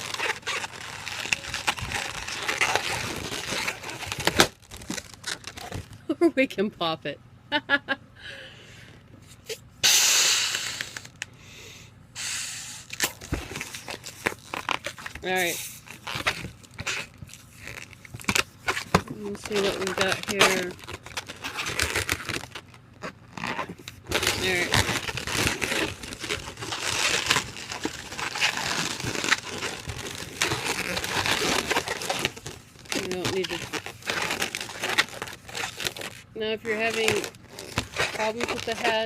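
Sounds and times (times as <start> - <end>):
balloon latex clicks and rubs: 0.0 - 6.0, 9.4 - 11.3, 12.2 - 39.0
hiss: 9.8 - 11.0, 12.2 - 12.9.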